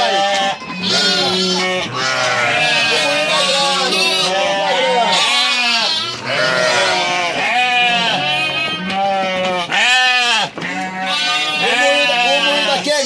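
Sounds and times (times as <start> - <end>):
sheep and lambs bleating: 0.0 - 13.0.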